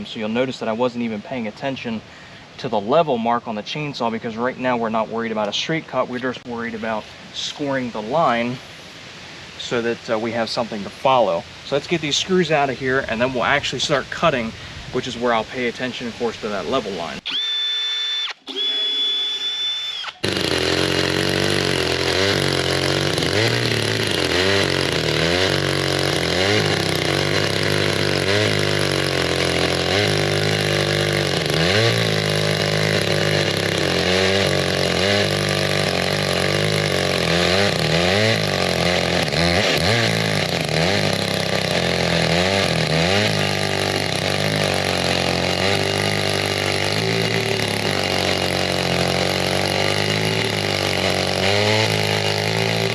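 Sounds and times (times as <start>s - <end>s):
chainsaw cutting wood: 16.4s - 52.9s.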